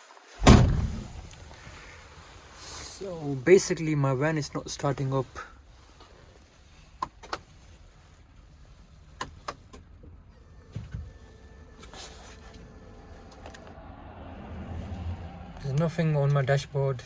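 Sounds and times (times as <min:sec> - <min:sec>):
low thud: 0:00.4 - 0:01.4.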